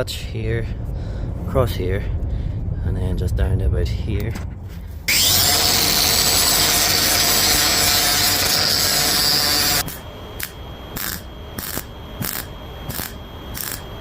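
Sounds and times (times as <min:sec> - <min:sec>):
angle grinder grinding steel: 0:05.1 - 0:14.0.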